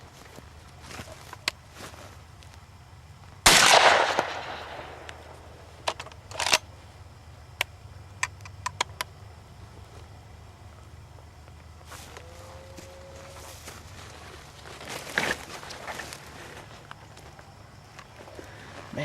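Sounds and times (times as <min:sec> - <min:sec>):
shotgun shot: 0:03.5 - 0:05.2.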